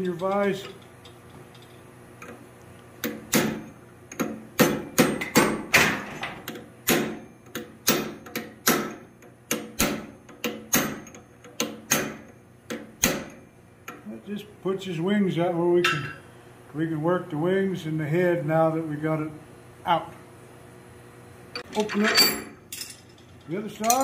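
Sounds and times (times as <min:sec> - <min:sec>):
hammer striking hot steel: 0:03.0 - 0:06.1, 0:06.8 - 0:13.4.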